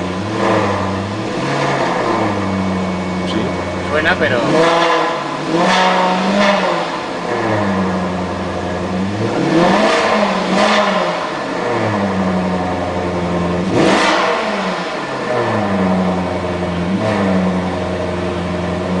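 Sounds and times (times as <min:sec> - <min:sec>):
car engine idling and revving: 0:00.0 - 0:19.0.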